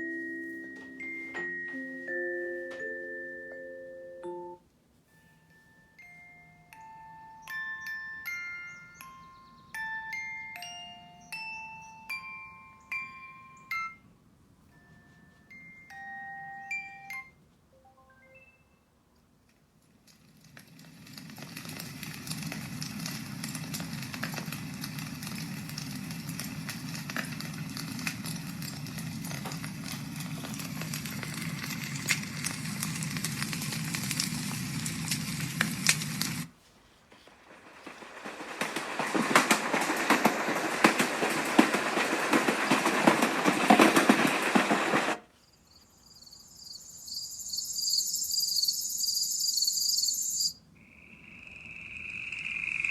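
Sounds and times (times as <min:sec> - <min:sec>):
crackling hiss: 0:19.9 - 0:52.9
crickets and frogs chirping: 0:45.4 - 0:52.9.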